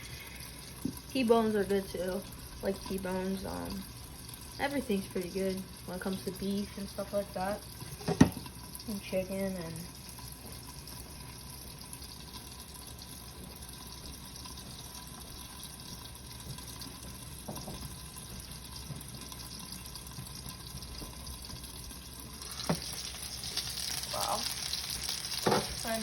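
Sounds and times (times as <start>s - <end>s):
steak sizzling in a frying pan: 15.5s - 26.0s.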